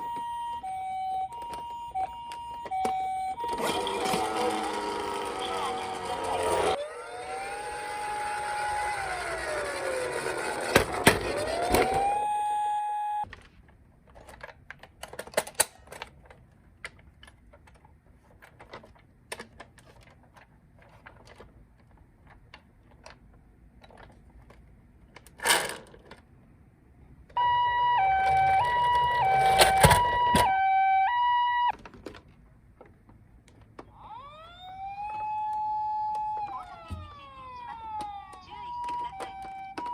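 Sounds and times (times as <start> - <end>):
toy siren wailing: 0.0 - 13.3, 27.4 - 31.7, 33.9 - 39.9
two-tone ambulance siren: 0.0 - 13.3, 27.4 - 31.7, 33.9 - 39.9.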